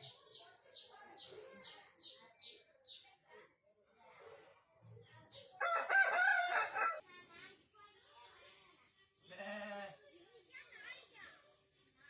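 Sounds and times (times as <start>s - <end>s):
rooster crowing: 5.6s - 7.0s.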